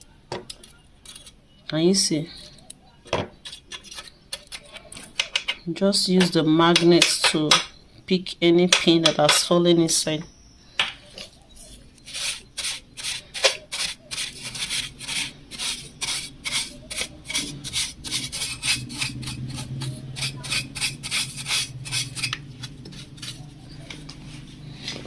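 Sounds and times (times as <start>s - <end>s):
brush scrubbing metal pan: 12.0s - 23.7s.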